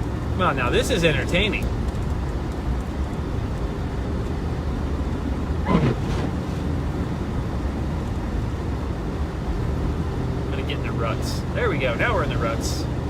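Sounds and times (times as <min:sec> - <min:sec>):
wind noise: 0:00.0 - 0:10.5
vehicle engine rumble: 0:00.0 - 0:13.0
tyres in deep snow: 0:04.3 - 0:07.0.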